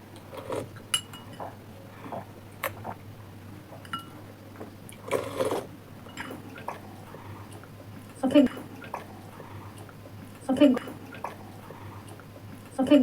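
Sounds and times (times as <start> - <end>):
cutlery clinking on plates and glasses: 0.9 - 1.5, 3.8 - 4.2.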